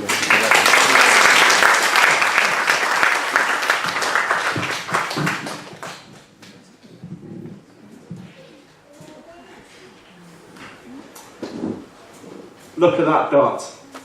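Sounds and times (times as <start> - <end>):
audience applauding: 0.0 - 6.3.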